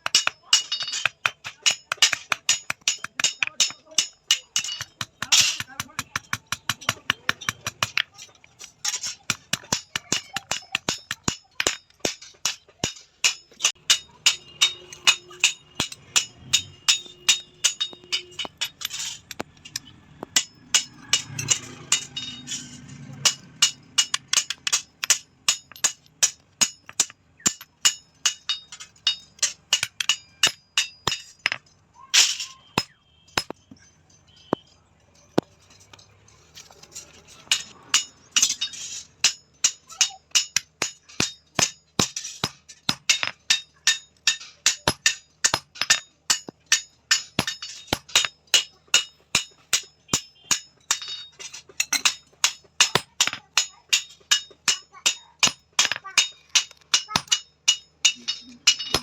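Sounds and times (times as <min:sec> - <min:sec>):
hammer striking metal on anvil: 0:08.8 - 0:31.6, 0:32.2 - 0:33.8, 0:37.4 - 0:59.0.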